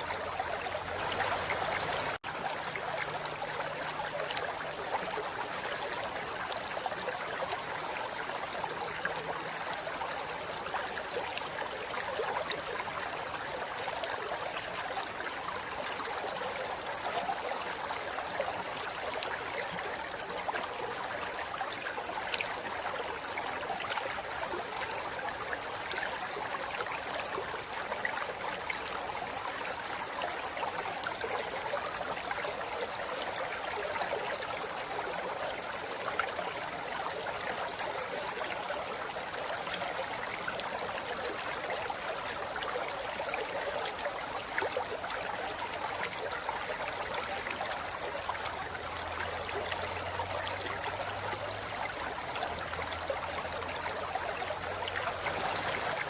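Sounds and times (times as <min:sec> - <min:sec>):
river rushing over rocks: 0:54.6 - 0:56.0.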